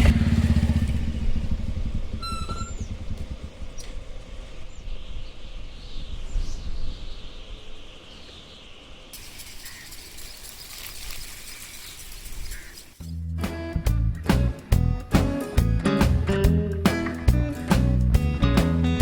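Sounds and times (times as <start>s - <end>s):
birds chirping: 2.1s - 13.3s
steady high hiss: 9.1s - 13.1s.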